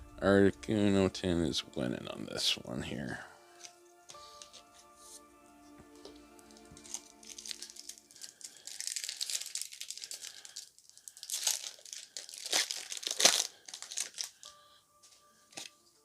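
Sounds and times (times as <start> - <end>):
wrapper ripping: 6.4 - 14.5
wrapper crinkling and rustling: 6.4 - 14.6.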